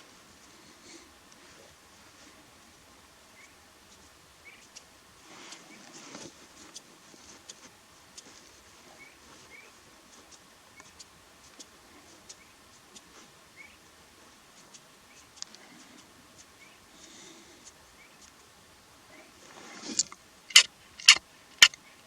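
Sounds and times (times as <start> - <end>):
faint clicks: 14.6 - 16.5
brief rustle: 19.4 - 21.8.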